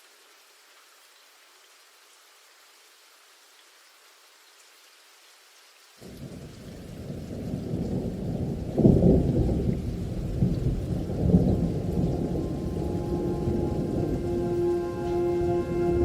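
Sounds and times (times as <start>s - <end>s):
rain hissing: 0.0s - 16.0s
thunder rumbling: 6.0s - 16.0s.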